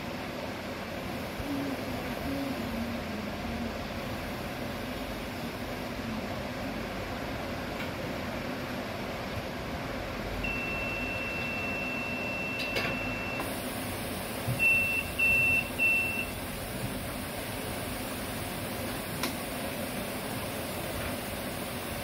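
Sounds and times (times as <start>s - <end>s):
ventilator beeping: 10.4s - 22.0s
machine hiss: 13.4s - 22.0s.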